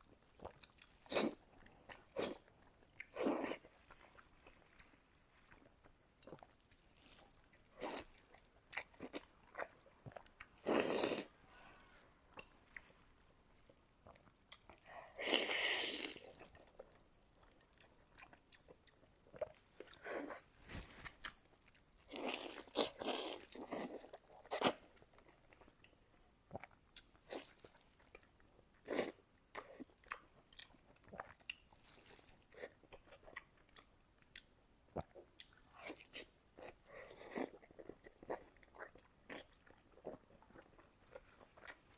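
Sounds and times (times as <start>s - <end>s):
close chewing and biting: 12.4s - 41.9s.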